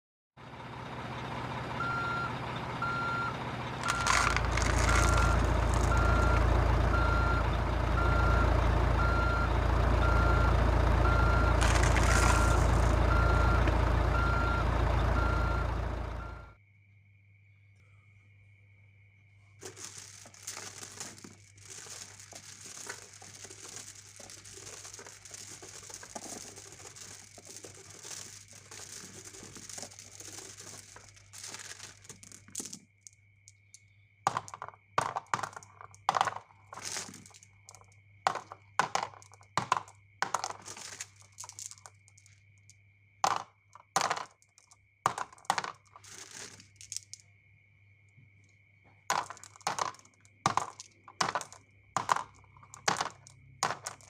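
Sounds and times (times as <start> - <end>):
marbles clacking on wood: 3.8 - 7.4, 11.1 - 14.5, 19.6 - 47.3, 49.1 - 54.0
marbles rolling on wooden run: 3.8 - 16.3, 19.6 - 47.3, 48.9 - 54.0.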